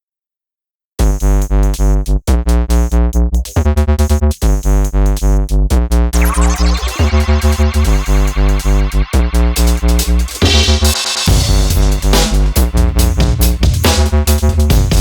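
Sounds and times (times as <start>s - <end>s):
electronic music with drum-machine beat: 1.0s - 15.0s
rising synth sweep: 6.2s - 12.9s.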